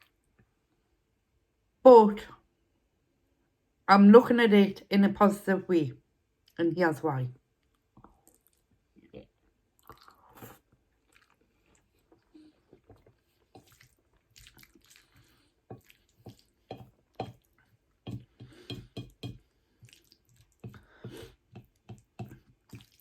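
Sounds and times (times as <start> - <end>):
wet chewing: 7.6 - 23.0.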